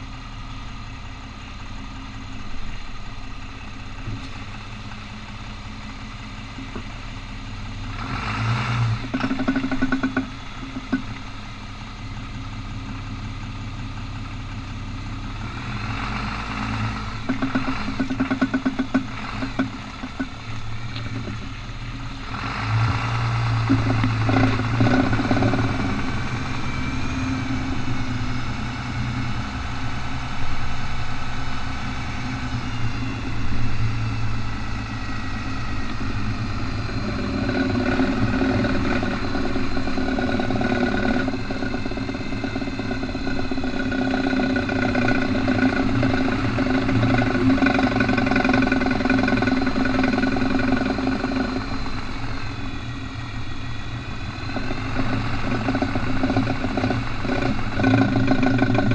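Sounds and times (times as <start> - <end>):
vehicle engine hum: 0.0 - 58.9
fast driveline ratcheting: 8.0 - 11.5, 15.8 - 58.9.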